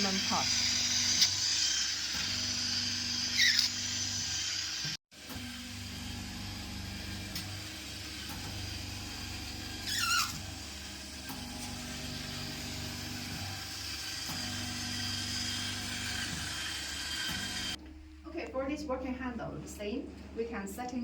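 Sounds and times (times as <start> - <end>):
pulsing motor hum: 0.0 - 17.8
short falling squeal: 9.8 - 10.3.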